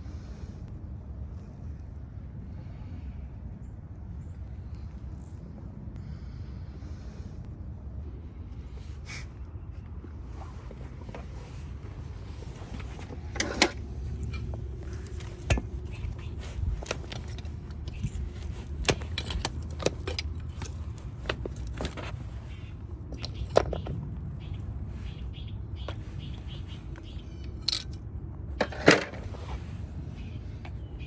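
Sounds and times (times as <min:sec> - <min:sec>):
tools scraping hoof: 0:10.4 - 0:22.6, 0:28.6 - 0:29.7
metal tools clicking on hoof: 0:13.0 - 0:22.1, 0:27.4 - 0:28.0.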